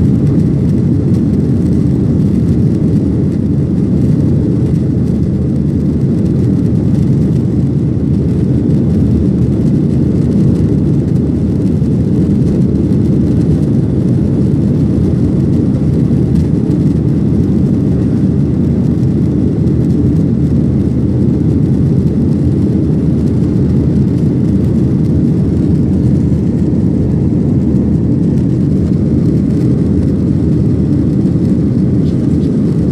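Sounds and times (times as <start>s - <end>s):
jet engine rumble in cabin: 0.0s - 32.9s
rushing air: 21.9s - 32.9s.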